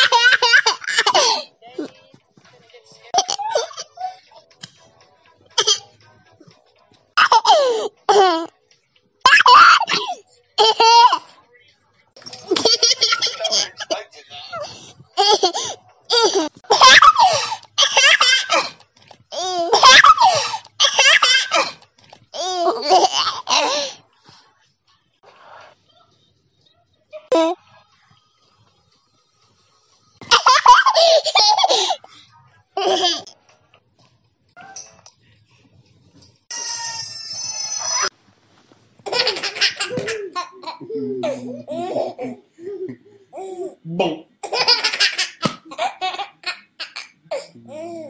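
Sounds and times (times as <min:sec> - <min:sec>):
baby laughing: 0:00.0 - 0:01.5, 0:03.2 - 0:04.2, 0:07.2 - 0:08.5, 0:09.2 - 0:11.3, 0:15.2 - 0:21.8, 0:22.4 - 0:23.9, 0:30.3 - 0:32.0, 0:39.0 - 0:48.0
baby squealing: 0:36.5 - 0:38.1.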